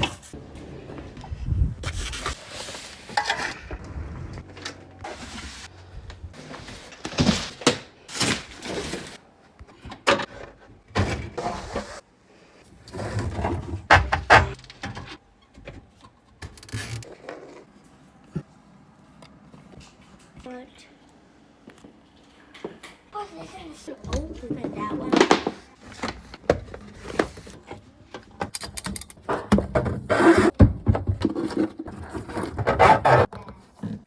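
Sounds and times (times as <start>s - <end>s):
knocks and clunks of installation work: 13.2s - 17.1s, 24.0s - 34.0s.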